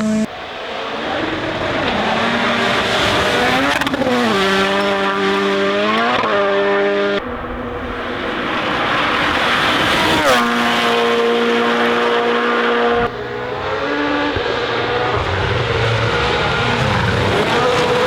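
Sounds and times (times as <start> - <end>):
race car engines revving high: 0.0 - 18.0
tyre and road noise: 0.0 - 18.0.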